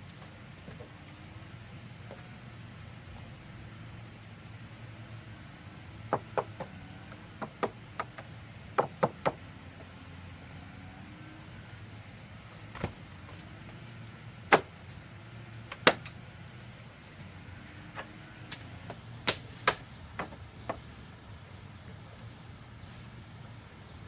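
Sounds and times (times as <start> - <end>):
hard objects knocking: 6.1 - 9.4, 19.2 - 20.9.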